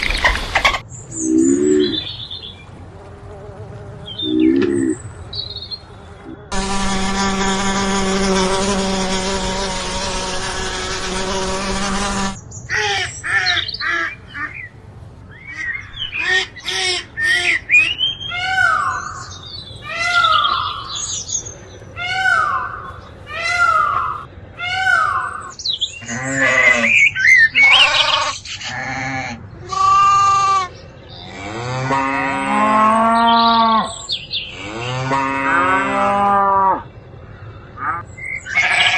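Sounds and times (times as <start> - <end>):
low drawn-out animal call: 22.0 - 38.9
animal bleating: 26.0 - 26.9, 27.6 - 33.9, 37.8 - 38.9.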